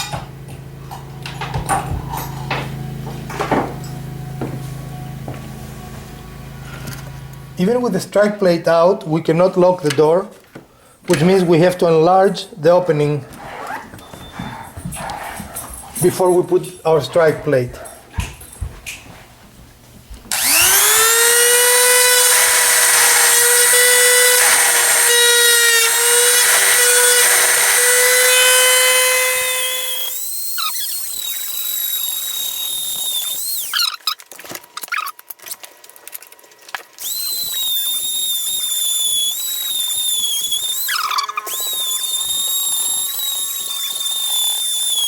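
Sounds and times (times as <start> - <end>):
power tool motor whining: 20.3 - 34.2, 37.0 - 45.0.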